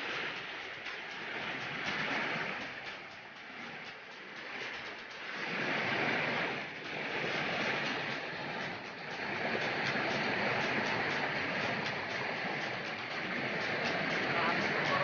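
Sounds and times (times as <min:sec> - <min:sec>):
flowing water rushing: 0:00.0 - 0:15.0.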